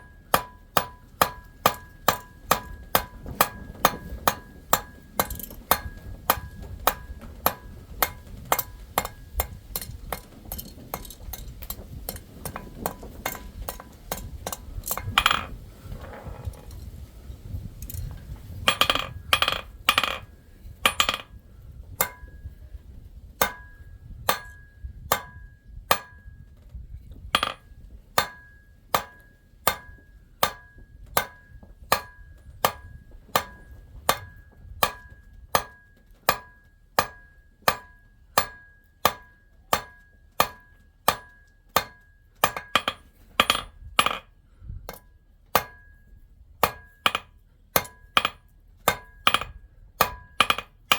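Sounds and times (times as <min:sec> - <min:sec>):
hammer ringing on anvil: 0:20.9 - 0:21.2.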